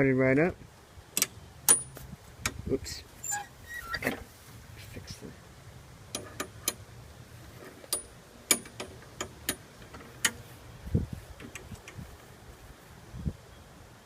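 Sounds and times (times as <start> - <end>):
hands clicking and knocking on mower: 7.9 - 10.4.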